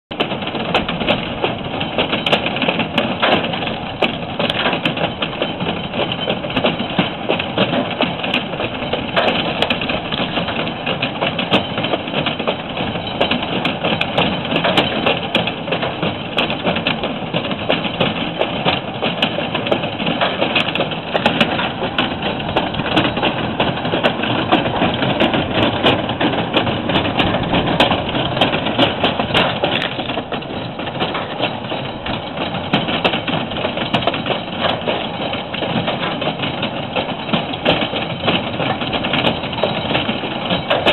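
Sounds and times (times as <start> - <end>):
crackle of small clicks: 29.4 - 30.1.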